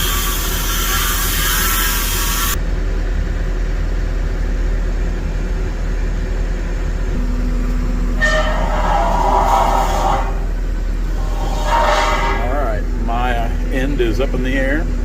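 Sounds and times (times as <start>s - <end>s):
diesel engine rumbling: 2.5s - 15.0s
horn-like tone: 7.2s - 13.0s.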